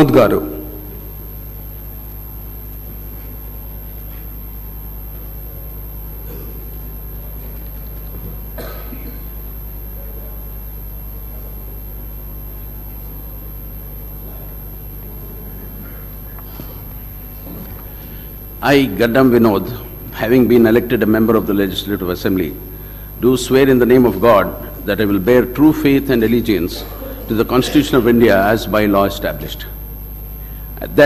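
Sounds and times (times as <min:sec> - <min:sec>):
low electrical hum: 0:00.0 - 0:31.0.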